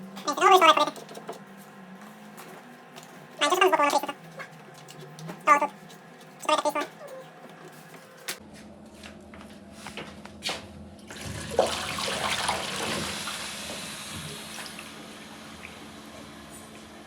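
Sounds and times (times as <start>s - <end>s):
cat toilet water rushing: 11.1s - 17.0s.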